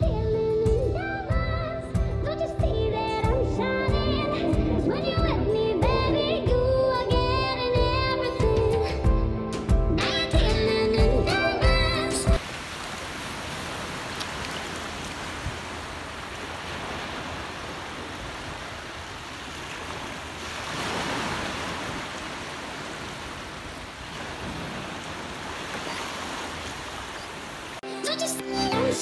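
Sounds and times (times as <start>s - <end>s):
waves breaking on a beach: 12.4s - 27.8s.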